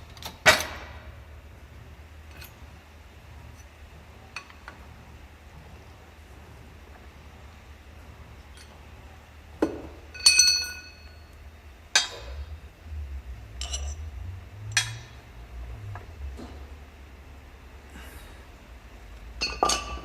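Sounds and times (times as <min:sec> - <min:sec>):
steel parts clanking: 0:13.6 - 0:14.1.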